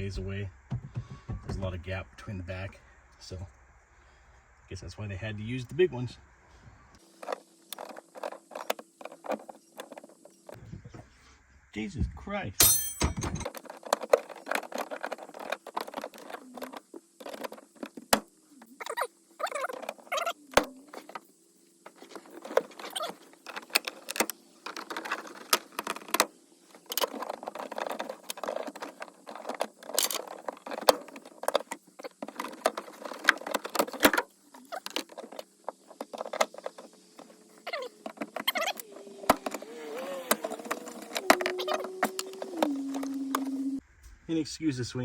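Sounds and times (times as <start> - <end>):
plastic scraping and rattling: 7.0 - 10.7, 13.3 - 43.8.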